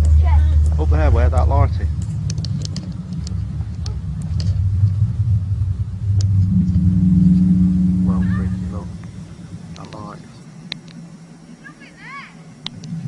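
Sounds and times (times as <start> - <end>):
low droning rumble in the sky: 0.0 - 13.0
steady horn-like tone: 4.6 - 10.6.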